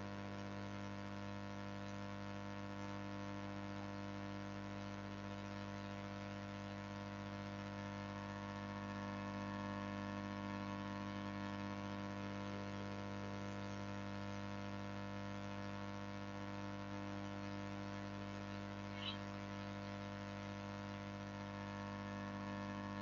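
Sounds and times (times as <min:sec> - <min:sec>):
electrical hum and buzz: 0:00.0 - 0:23.0.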